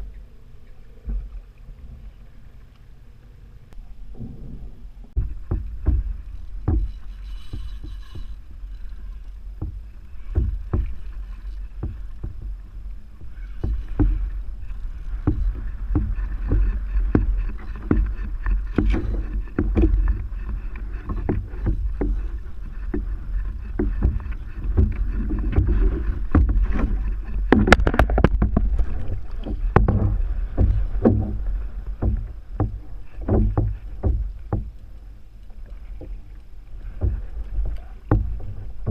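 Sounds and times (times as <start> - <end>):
low rumble: 0.0 - 38.9
water sloshing against hull: 0.0 - 38.9
knocks on kayak hull: 5.2 - 7.0, 9.6 - 11.2, 22.9 - 34.7, 36.9 - 38.9.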